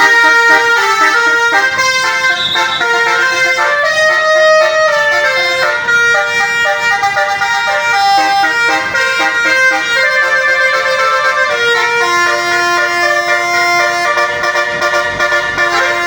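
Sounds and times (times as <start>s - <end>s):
multi-tone horn playing melody: 0.0s - 16.0s.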